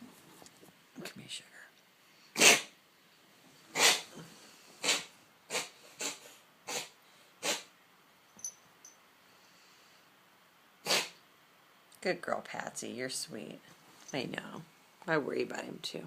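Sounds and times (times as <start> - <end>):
cat coughing: 3.7 - 4.2, 10.8 - 11.2.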